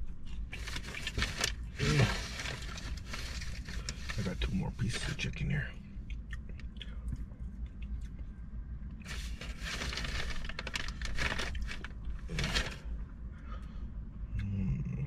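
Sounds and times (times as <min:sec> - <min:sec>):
paper packaging crinkling: 0:00.3 - 0:05.1, 0:09.0 - 0:13.0.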